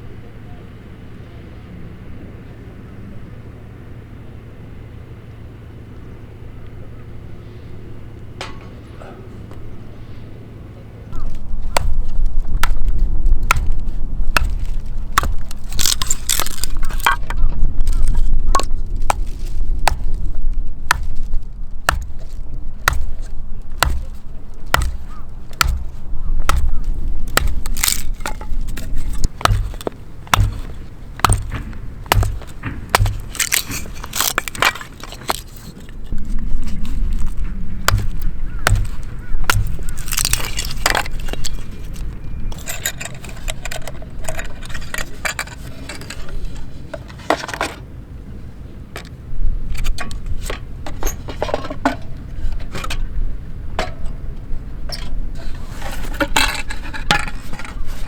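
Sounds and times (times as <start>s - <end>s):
dull thumps: 11.1s - 35.8s, 36.5s - 41.6s
sharp cracks and knocks: 11.1s - 46.7s
crackling breaking sounds: 11.9s - 35.7s, 36.5s - 41.7s.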